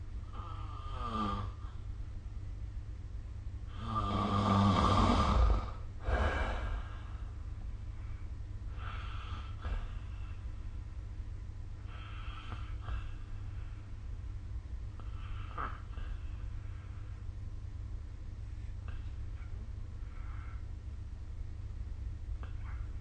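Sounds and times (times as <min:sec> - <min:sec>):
steady low hum: 0:00.0 - 0:23.0
person snoring: 0:00.3 - 0:01.7, 0:03.7 - 0:07.1
breathing: 0:05.0 - 0:10.6, 0:11.8 - 0:14.2, 0:15.0 - 0:17.3, 0:18.4 - 0:20.8.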